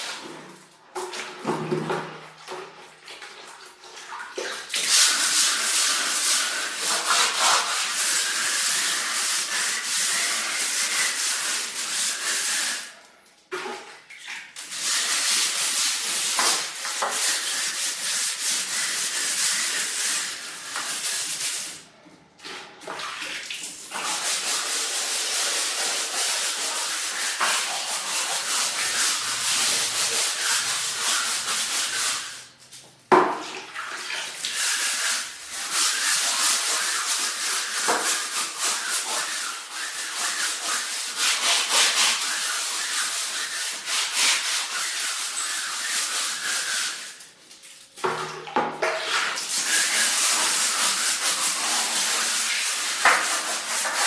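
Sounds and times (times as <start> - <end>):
bristle brush scrubbing: 4.7 - 13.0, 14.6 - 21.9, 22.5 - 32.9, 33.6 - 48.2, 49.0 - 54.0.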